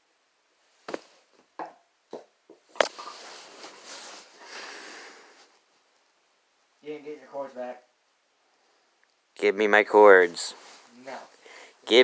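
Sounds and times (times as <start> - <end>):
rustling: 0.6 - 1.5, 2.6 - 6.2, 10.1 - 12.0.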